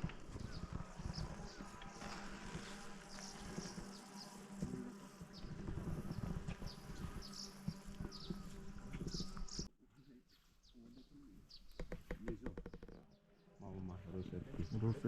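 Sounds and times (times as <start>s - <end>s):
low insect-like buzz: 0.0s - 9.7s
small bird chirping: 0.0s - 13.2s.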